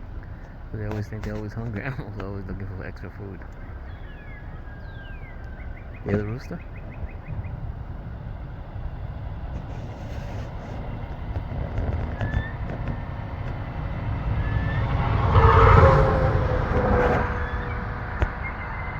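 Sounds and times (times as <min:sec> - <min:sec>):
small birds chirping: 0:00.0 - 0:15.0
truck passing by: 0:00.0 - 0:18.9.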